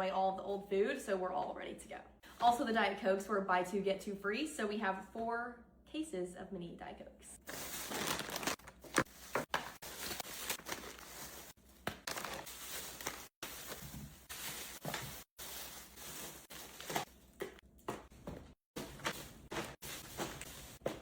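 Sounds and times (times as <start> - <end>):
packaging and bags rustling: 7.4 - 17.4, 18.2 - 21.0.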